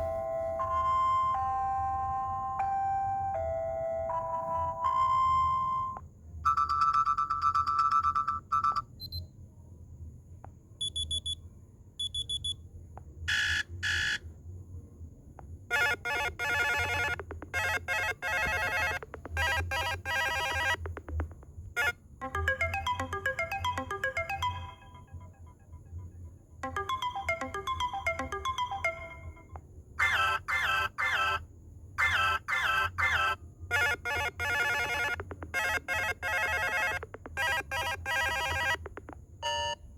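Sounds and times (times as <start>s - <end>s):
electronic ringtone melodies: 0.0s - 8.8s, 15.7s - 25.9s, 26.6s - 29.6s, 33.7s - 39.8s
fast repeating beeps: 10.8s - 11.4s, 12.0s - 12.5s, 15.7s - 25.1s, 26.6s - 29.4s, 33.7s - 39.8s.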